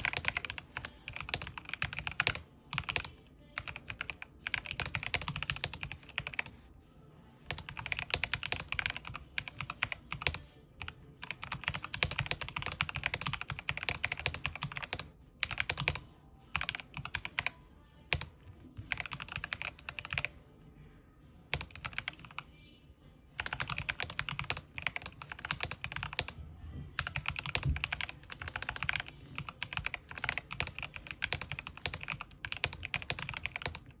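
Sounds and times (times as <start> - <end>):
mechanical keyboard typing: 0.0 - 6.6, 7.5 - 17.5, 18.1 - 20.3, 21.5 - 22.4, 23.4 - 26.4, 27.0 - 34.0.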